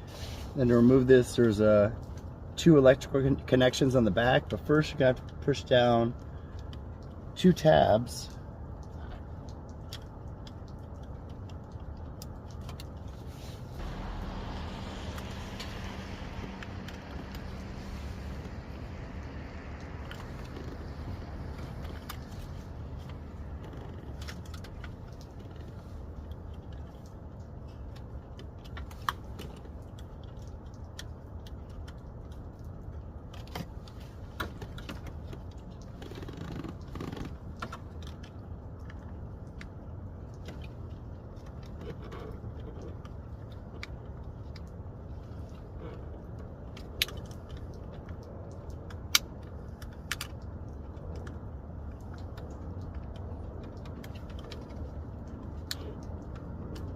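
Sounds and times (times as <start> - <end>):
steady low hum: 8.2 - 26.5.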